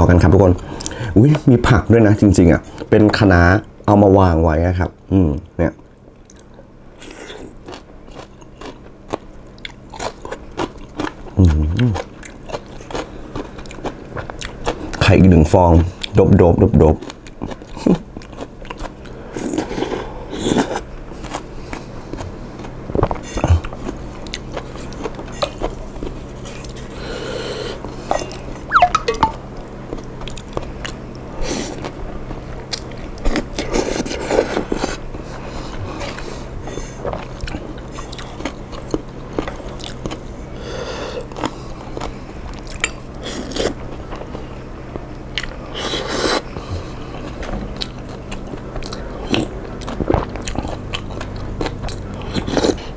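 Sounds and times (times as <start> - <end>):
person chewing and smacking: 7.6 - 14.9, 37.0 - 40.3, 46.6 - 52.8.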